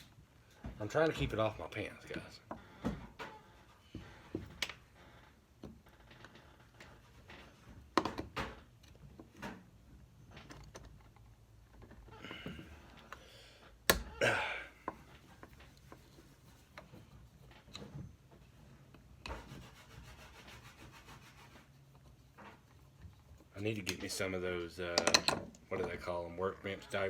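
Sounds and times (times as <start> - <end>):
hand tools clattering on workbench: 24.9 - 26.0.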